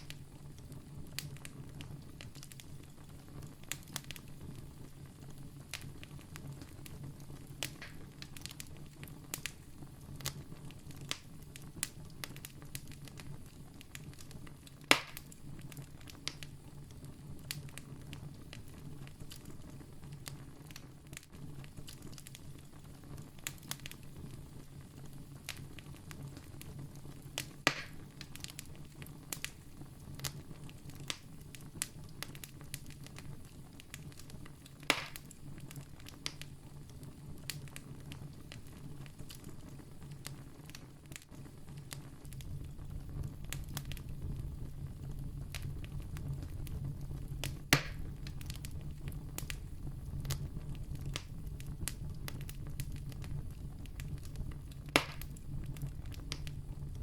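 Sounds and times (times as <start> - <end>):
campfire crackling: 0.0 - 57.0
sharp loud fire pops: 14.9 - 15.3, 27.6 - 28.0, 34.8 - 35.3, 47.4 - 48.6, 54.9 - 55.4
low steady rumble: 41.6 - 57.0.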